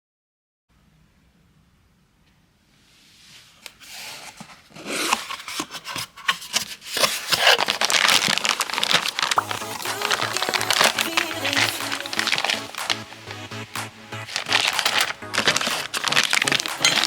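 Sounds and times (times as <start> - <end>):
rustling and scraping: 3.0 - 13.2, 14.1 - 17.0.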